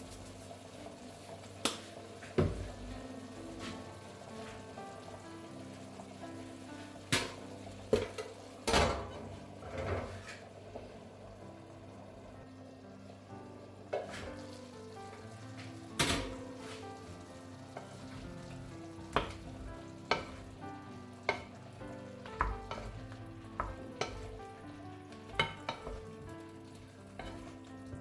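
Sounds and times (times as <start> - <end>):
food sizzling in a frying pan: 0.0 - 28.0
soft background music: 0.0 - 28.0
utensil tapping a pan: 1.6 - 3.0, 7.1 - 9.3, 17.8 - 20.6, 21.2 - 27.7.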